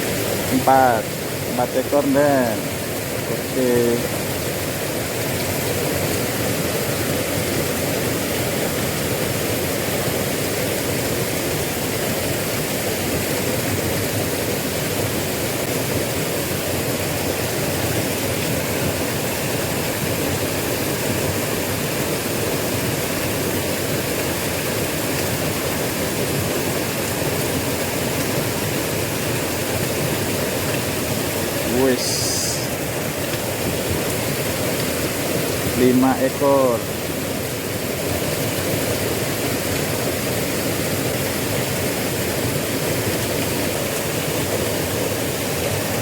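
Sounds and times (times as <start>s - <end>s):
river water rushing: 0.0s - 46.0s.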